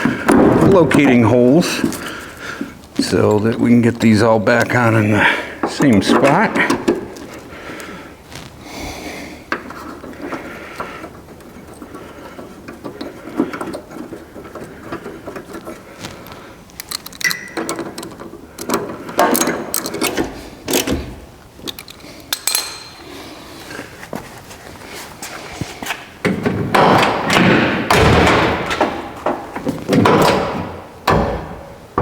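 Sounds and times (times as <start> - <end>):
metal hardware and tools clinking: 16.8 - 21.0, 21.6 - 23.2
sharp metal clanks: 22.3 - 23.0.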